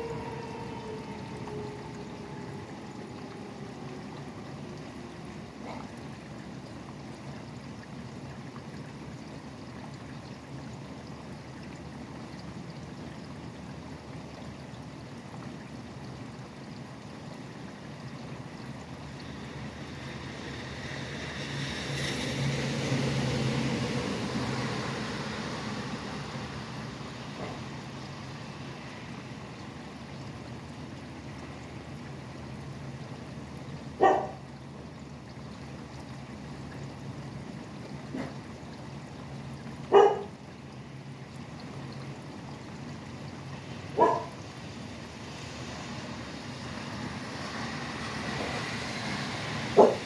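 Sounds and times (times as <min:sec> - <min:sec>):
steady rain falling: 0:00.0 - 0:05.8, 0:19.2 - 0:29.7, 0:43.6 - 0:50.0
highway traffic hum: 0:00.0 - 0:50.0
vehicle passing: 0:19.2 - 0:29.6, 0:43.7 - 0:50.0
dog barking: 0:34.0 - 0:34.4, 0:39.9 - 0:40.3, 0:44.0 - 0:44.4, 0:49.8 - 0:50.0.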